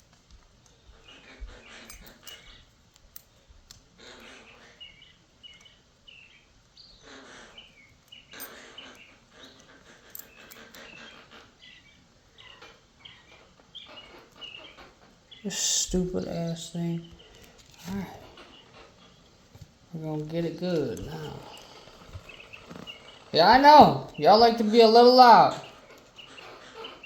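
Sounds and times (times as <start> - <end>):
light clicks of small parts: 0.0 - 4.4, 7.6 - 11.4
small birds chirping: 0.0 - 27.0.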